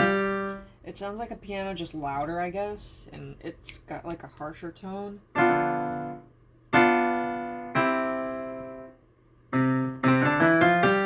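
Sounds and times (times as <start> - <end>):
digital piano chords: 0.0 - 0.7, 5.3 - 11.0.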